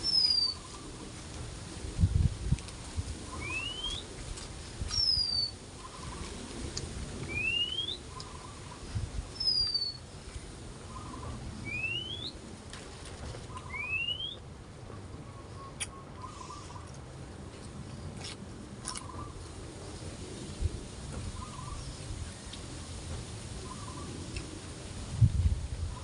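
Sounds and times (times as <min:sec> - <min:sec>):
bird whistling calls: 0:00.0 - 0:00.8, 0:03.3 - 0:04.1, 0:04.9 - 0:06.2, 0:07.3 - 0:08.7, 0:09.4 - 0:10.0, 0:10.9 - 0:12.4, 0:13.5 - 0:14.4.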